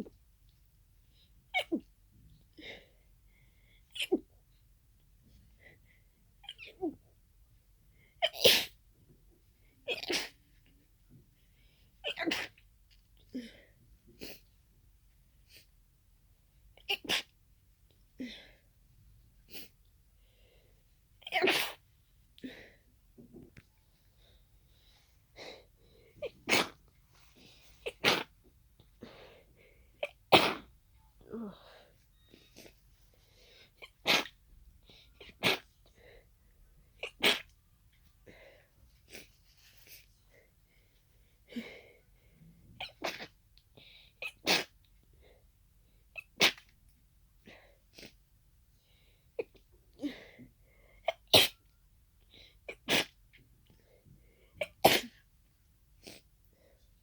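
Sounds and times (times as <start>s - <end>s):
soft breaths: 2.2s - 6.4s, 17.9s - 21.2s, 21.8s - 28.0s, 28.7s - 30.0s, 31.0s - 37.0s, 37.6s - 42.8s, 47.3s - 51.1s, 53.4s - 54.6s, 55.9s - 57.0s
person sneezing: 9.9s - 10.4s, 12.1s - 12.6s, 16.9s - 17.3s, 21.3s - 21.8s, 26.2s - 26.8s, 27.8s - 28.3s, 30.0s - 30.7s, 33.8s - 34.4s, 35.2s - 35.7s, 37.0s - 37.5s, 42.8s - 43.4s, 44.2s - 44.8s, 46.3s - 46.7s, 51.1s - 51.6s, 52.7s - 53.2s, 54.6s - 55.2s.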